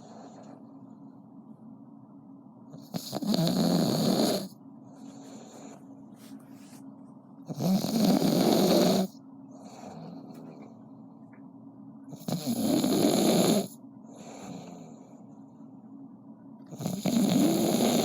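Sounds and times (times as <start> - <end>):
quiet breaths: 0.0 - 1.3, 4.4 - 7.0, 8.6 - 11.3, 13.2 - 16.0
loud snores: 2.8 - 4.5, 7.5 - 9.2, 12.2 - 13.8, 16.7 - 18.0.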